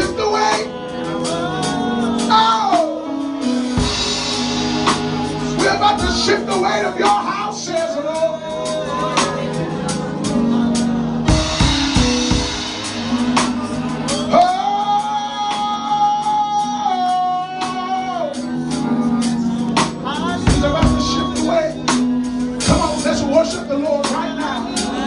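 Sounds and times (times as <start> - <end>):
sustained worship music chords: 0.0 - 25.0
drum and cymbal hits: 2.3 - 7.5, 8.6 - 16.4.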